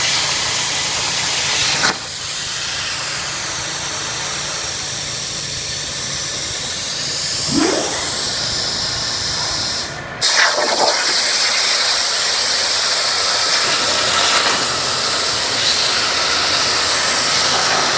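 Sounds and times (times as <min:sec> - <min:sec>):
plasma cutter hissing: 0:07.3 - 0:17.9.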